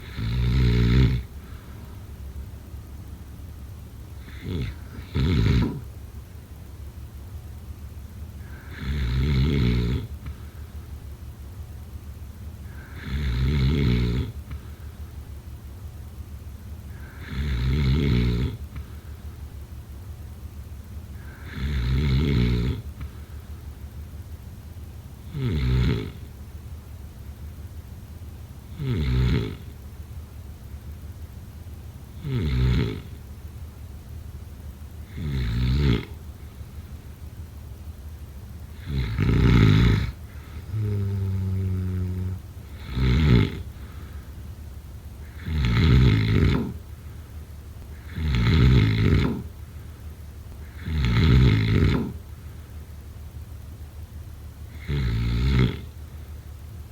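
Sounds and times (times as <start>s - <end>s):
person snoring: 0.0s - 1.7s, 4.2s - 5.9s, 8.4s - 10.4s, 12.6s - 14.6s, 16.9s - 18.9s, 21.2s - 22.9s, 28.7s - 29.7s, 32.2s - 33.2s, 35.1s - 36.2s, 38.7s - 44.2s, 45.2s - 46.8s, 47.9s - 49.5s, 50.5s - 52.2s, 54.7s - 55.9s
low humming breath: 0.0s - 56.9s
soft breathing: 1.2s - 3.1s, 8.3s - 8.8s, 10.0s - 11.2s, 12.6s - 13.3s, 14.3s - 15.3s, 16.8s - 17.4s, 18.6s - 19.9s, 21.1s - 21.7s, 22.8s - 24.0s, 38.1s - 45.6s, 49.2s - 51.0s.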